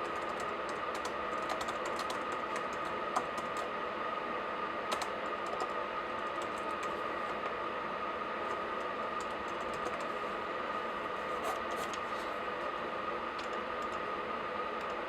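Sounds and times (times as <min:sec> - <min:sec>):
laptop keystrokes: 0:00.1 - 0:03.7, 0:09.2 - 0:10.1.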